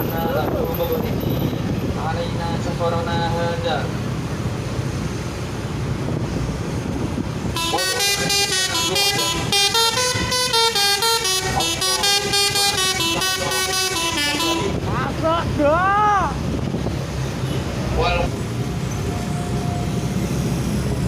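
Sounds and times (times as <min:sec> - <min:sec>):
bus engine rumbling: 0:00.0 - 0:21.0
multi-tone horn melody: 0:07.6 - 0:14.9.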